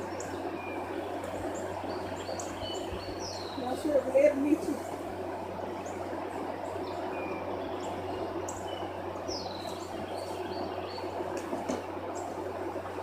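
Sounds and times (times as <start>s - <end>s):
bird chirps: 0.1s - 3.9s, 6.8s - 11.2s.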